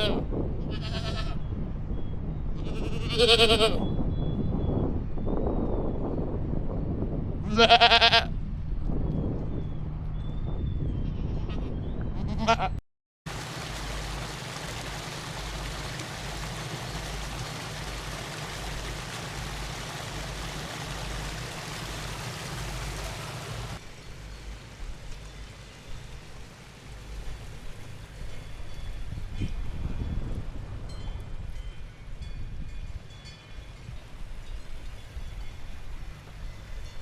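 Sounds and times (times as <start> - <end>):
livestock bleating: 0.0 - 1.4, 2.6 - 3.8, 7.5 - 8.3, 12.2 - 12.8
rushing noise with low throb: 13.3 - 28.4.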